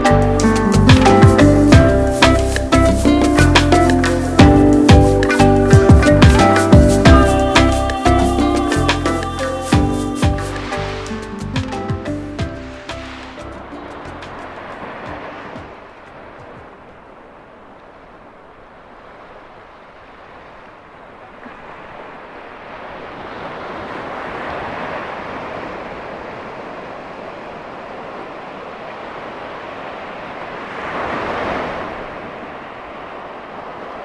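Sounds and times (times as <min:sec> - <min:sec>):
ocean surf breaking: 0:00.0 - 0:34.0.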